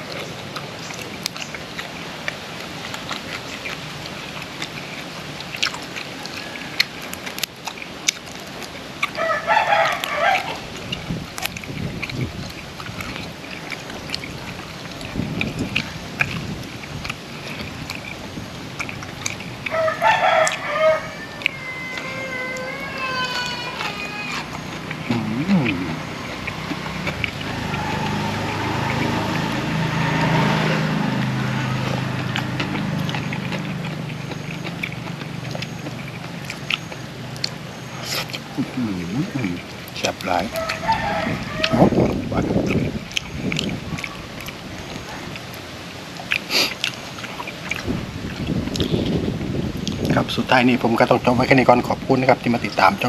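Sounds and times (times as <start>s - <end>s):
wet mouth clicks: 0.0s - 9.2s, 9.9s - 19.8s, 24.3s - 28.2s, 31.2s - 40.8s, 41.6s - 45.6s, 46.2s - 49.2s
person chewing food: 0.0s - 50.2s
low engine hum: 24.4s - 46.1s.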